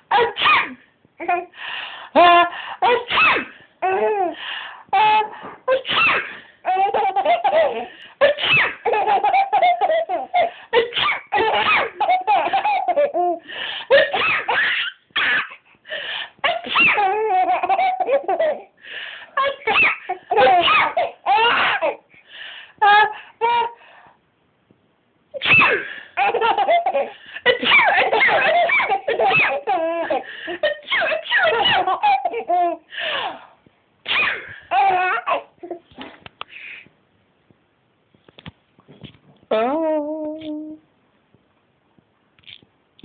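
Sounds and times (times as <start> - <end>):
child giggling: 19.4 - 21.9, 26.2 - 32.8.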